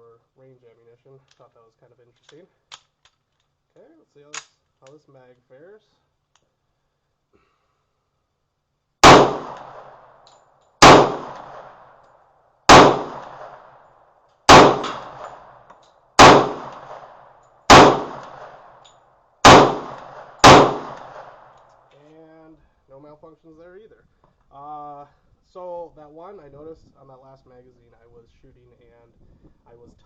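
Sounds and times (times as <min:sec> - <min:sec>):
pistol shots: 0:09.0 - 0:12.0, 0:12.7 - 0:13.8, 0:14.5 - 0:18.8, 0:19.4 - 0:21.6.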